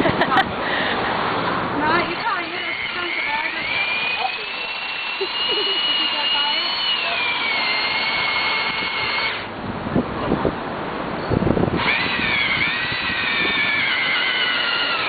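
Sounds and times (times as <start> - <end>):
power drill boring into concrete: 1.9 - 9.5, 11.8 - 15.0.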